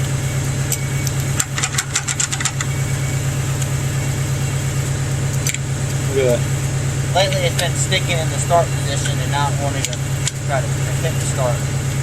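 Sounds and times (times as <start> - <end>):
engine idling: 0.0 - 12.0
ignition key clicks: 0.7 - 2.7.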